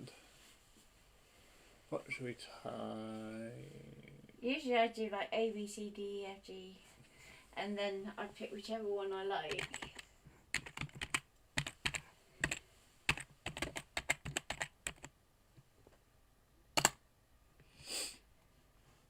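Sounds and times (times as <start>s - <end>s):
soft hiss: 0.0s - 9.4s
keyboard key clicks: 16.8s - 17.0s.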